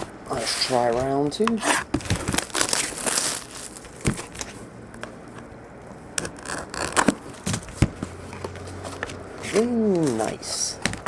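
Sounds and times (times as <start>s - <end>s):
plastic wrapping tearing and crinkling: 1.6s - 4.7s, 6.2s - 7.7s.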